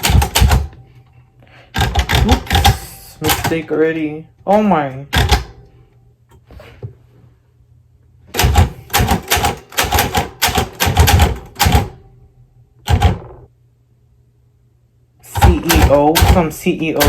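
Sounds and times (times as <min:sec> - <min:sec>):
typewriter keystrokes: 0:00.0 - 0:00.8, 0:01.7 - 0:03.8, 0:05.1 - 0:05.6, 0:08.4 - 0:12.0, 0:12.8 - 0:13.4, 0:15.3 - 0:17.0.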